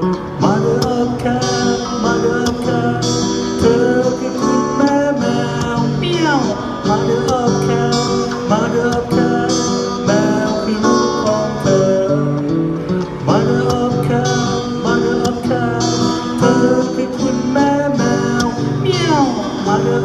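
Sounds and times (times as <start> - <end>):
acoustic guitar strummed and plucked: 0.0 - 20.0.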